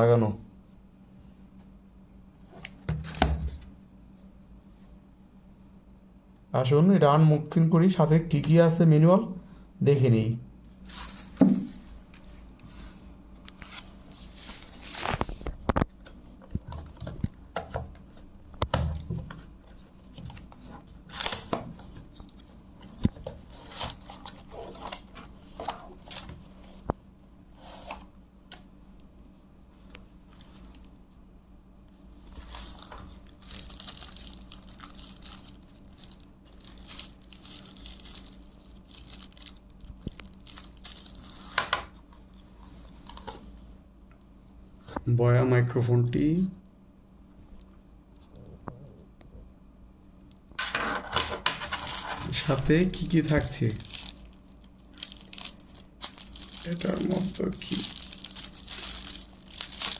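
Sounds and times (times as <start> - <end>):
faint low hum: 0.0 - 59.9
packaging tearing and crinkling: 20.2 - 25.2, 32.2 - 43.5, 51.7 - 59.9.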